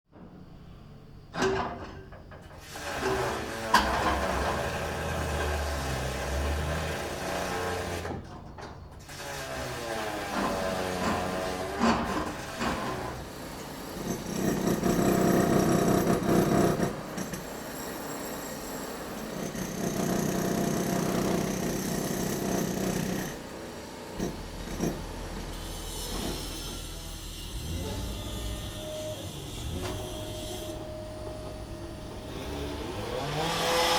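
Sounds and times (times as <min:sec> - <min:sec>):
demolition hammers breaking concrete: 0:09.0 - 0:23.5.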